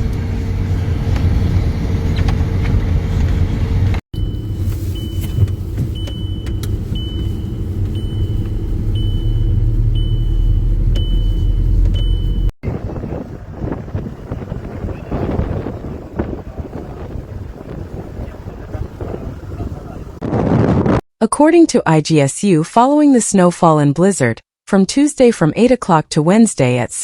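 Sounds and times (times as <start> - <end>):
vehicle engine rumbling: 0.0 - 21.0
high-pitched electronic beep: 4.2 - 12.5.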